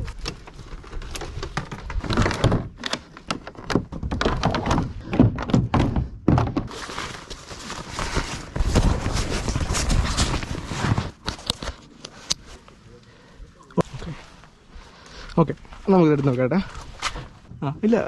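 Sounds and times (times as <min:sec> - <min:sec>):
hollow thunks on kayak hull: 0:03.7 - 0:06.7.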